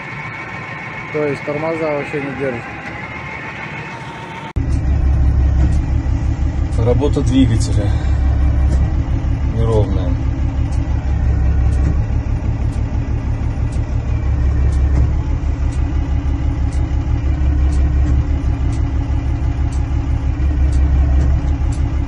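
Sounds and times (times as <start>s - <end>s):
diesel engine idling unevenly: 0.0s - 22.0s
sharp engine tick: 4.6s - 22.0s.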